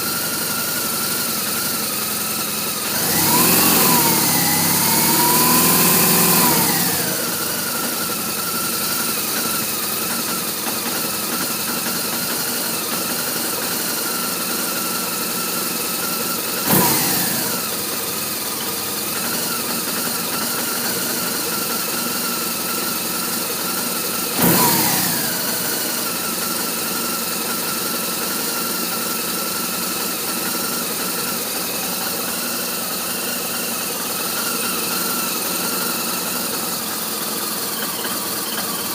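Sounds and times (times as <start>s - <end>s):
motorcycle engine idling: 0.0s - 38.9s.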